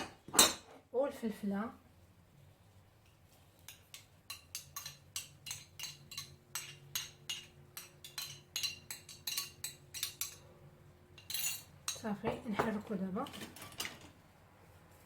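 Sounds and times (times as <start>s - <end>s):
kitchen utensil clinking: 3.7s - 10.4s, 11.2s - 14.1s.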